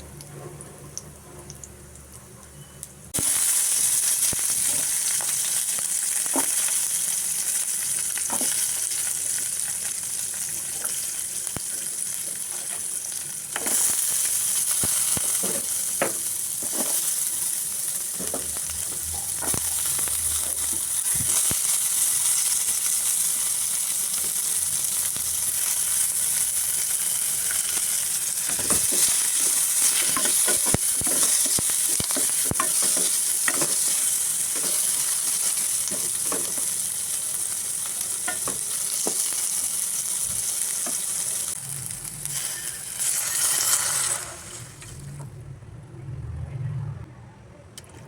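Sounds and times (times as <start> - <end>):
food sizzling in a pan: 3.1 - 45.2
utensil scraping a pan: 42.3 - 45.1.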